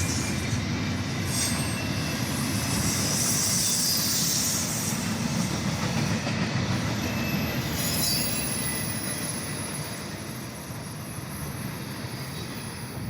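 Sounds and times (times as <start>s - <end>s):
freight train rumbling on rails: 0.0s - 13.0s
high wheel squeal: 1.2s - 5.0s, 7.0s - 13.0s.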